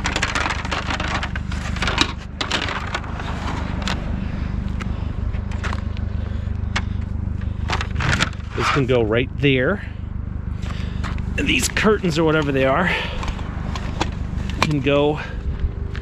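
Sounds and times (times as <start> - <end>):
junk scraping and clunking: 0.0 - 16.0
steady low hum: 0.0 - 16.0.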